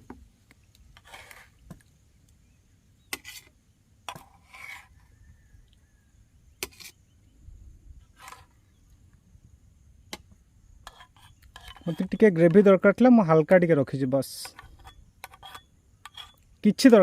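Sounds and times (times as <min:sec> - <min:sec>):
spoon scraping plate: 0:00.9 - 0:01.6, 0:03.1 - 0:05.2, 0:06.6 - 0:07.0, 0:08.1 - 0:08.6, 0:10.8 - 0:12.8, 0:14.4 - 0:16.4.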